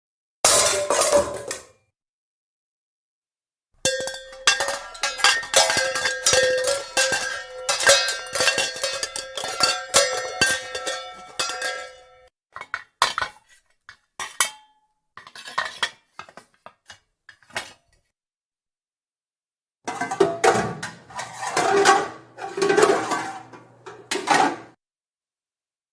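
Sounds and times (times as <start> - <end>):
pots and pans clattering: 0.5 - 1.7, 3.9 - 13.4, 15.2 - 17.8, 19.9 - 24.8
knocks and clinks: 3.9 - 12.3.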